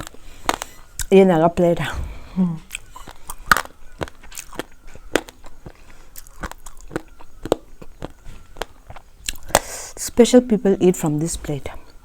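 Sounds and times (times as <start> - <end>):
chewing crunchy food: 0.0 - 1.2, 2.6 - 10.2.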